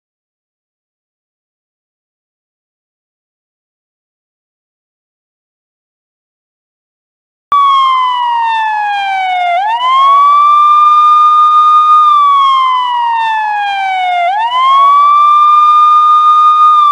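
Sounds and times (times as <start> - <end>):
police siren wailing: 7.5 - 16.9.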